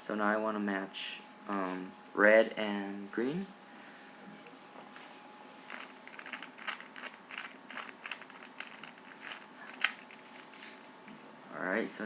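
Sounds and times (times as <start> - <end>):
puzzle cube clicking as twisted: 5.7 - 10.6.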